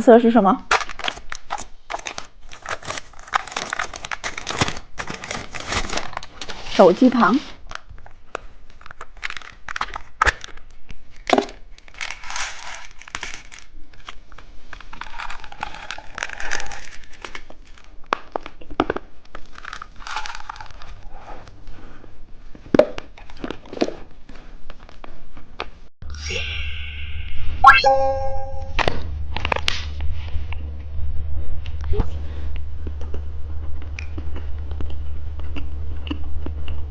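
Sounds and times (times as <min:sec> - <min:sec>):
plastic wrapper crinkling and tearing: 0:00.7 - 0:06.6, 0:07.7 - 0:21.0.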